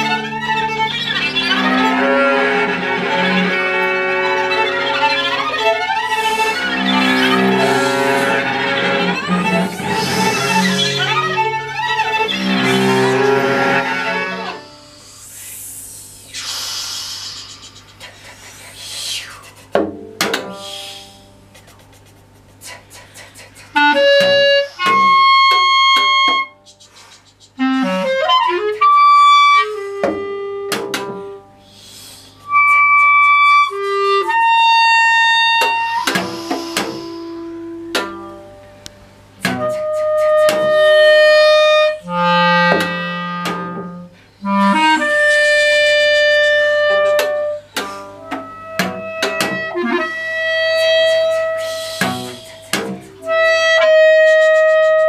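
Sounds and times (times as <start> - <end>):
steady low hum: 0.0 - 54.4
breathy held notes: 0.1 - 19.2, 20.4 - 21.5, 35.9 - 40.0, 40.7 - 53.8.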